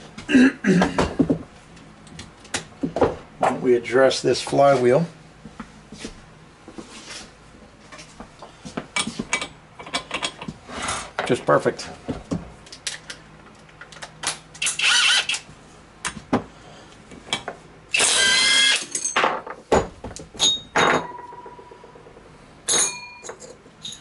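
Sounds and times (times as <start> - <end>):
metal parts clinking and rattling: 18.7 - 19.5, 22.7 - 24.0
metallic rings: 20.4 - 24.0.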